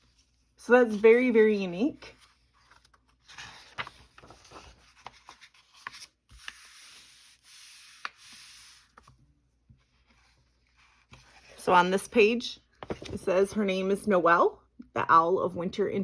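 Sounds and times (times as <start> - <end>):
paper pages swishing: 0.0 - 9.2.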